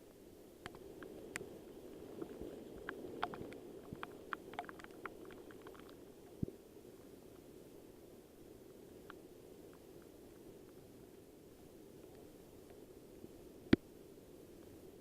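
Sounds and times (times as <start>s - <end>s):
steady rain: 0.1s - 13.3s
sharp little ticks: 2.8s - 6.0s.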